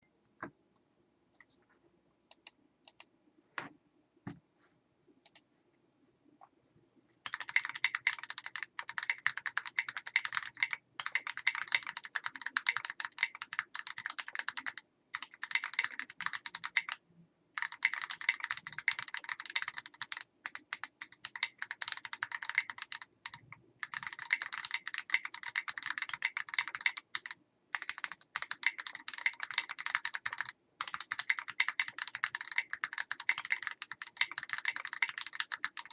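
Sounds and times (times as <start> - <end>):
fast typing on mechanical keyboard: 7.2 - 17.0, 17.6 - 35.9.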